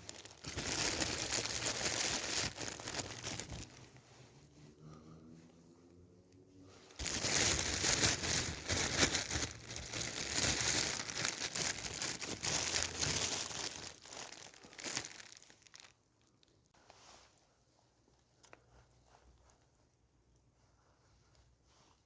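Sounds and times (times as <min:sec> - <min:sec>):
packaging crinkling and crumpling: 0:00.0 - 0:03.9, 0:07.0 - 0:16.5.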